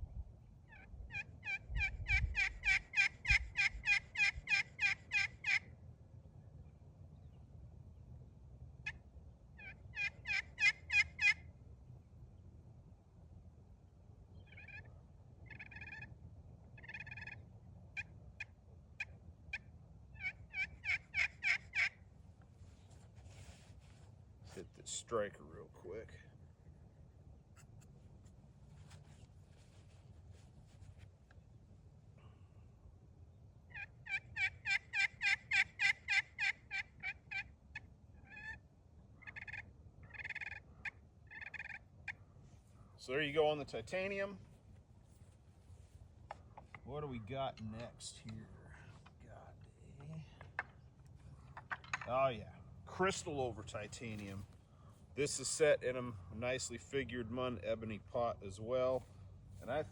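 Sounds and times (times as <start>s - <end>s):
turkey call clucks: 0.6s - 5.7s, 9.6s - 11.5s, 14.4s - 22.0s, 33.7s - 42.2s, 50.0s - 52.1s
turkey call yelps: 0.6s - 5.7s, 9.6s - 11.5s, 14.4s - 22.0s, 33.7s - 42.2s
turkey call purring: 0.7s - 5.7s, 9.6s - 11.4s, 14.4s - 16.1s, 16.8s - 17.4s, 18.0s - 22.0s, 33.7s - 38.6s, 39.2s - 42.2s.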